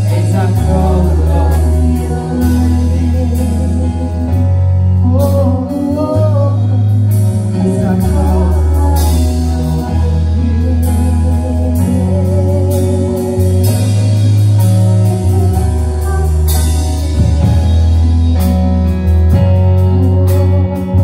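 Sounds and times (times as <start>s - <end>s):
bass notes: 0.0s - 21.0s
guitar: 0.0s - 21.0s
drum kit steady beat: 7.1s - 21.0s.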